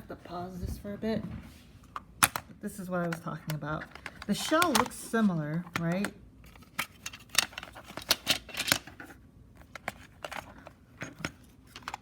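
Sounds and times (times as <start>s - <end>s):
plastic cassette shells clicking: 3.9s - 5.0s, 5.6s - 9.1s, 9.7s - 12.0s.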